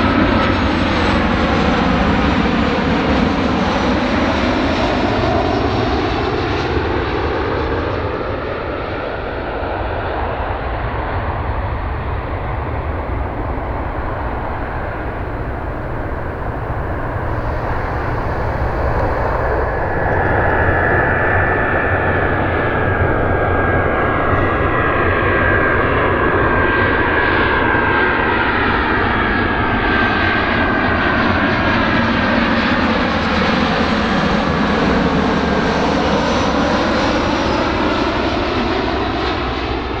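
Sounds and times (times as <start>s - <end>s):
jet engines rushing: 11.6s - 30.2s
high whine: 11.8s - 28.6s.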